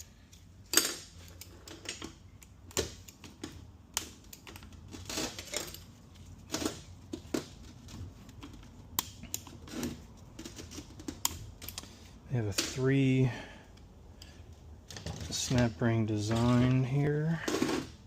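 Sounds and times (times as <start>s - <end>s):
metal tools and parts clattering: 4.9s - 6.8s.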